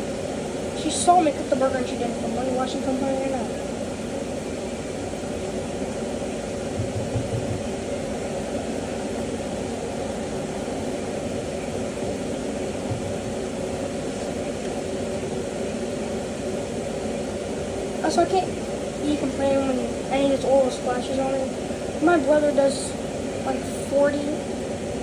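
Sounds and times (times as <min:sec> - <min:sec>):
constant hum: 0:00.0 - 0:25.0.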